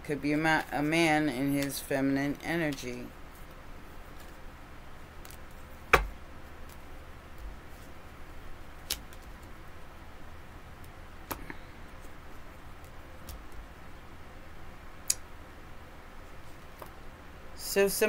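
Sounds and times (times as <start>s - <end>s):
faint room hiss: 0.0s - 18.0s.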